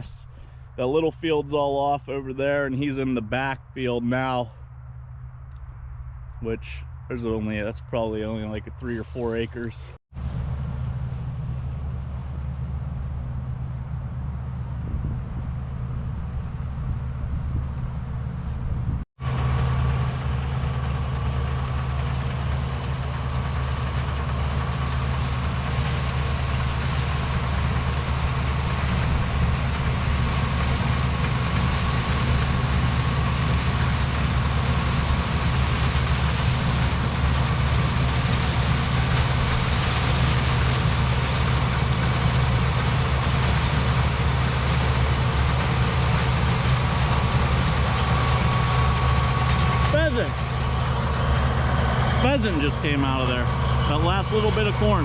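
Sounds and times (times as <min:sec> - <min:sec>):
large engine running: 0:00.0 - 0:55.0.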